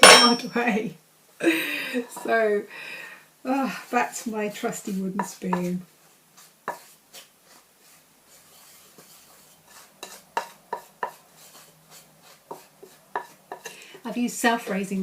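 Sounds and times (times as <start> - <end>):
spoon scraping in bowl: 6.4 - 13.8.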